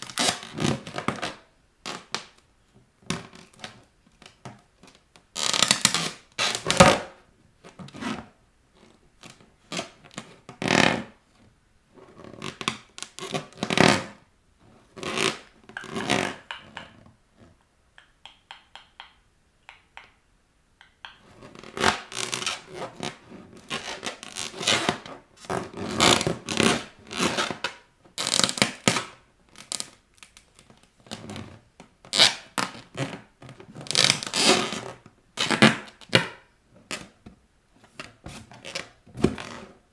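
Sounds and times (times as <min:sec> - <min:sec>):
balloons squeaking under feet: 0:05.4 - 0:07.0, 0:12.2 - 0:14.2, 0:14.9 - 0:17.7, 0:21.0 - 0:29.9, 0:33.8 - 0:36.1.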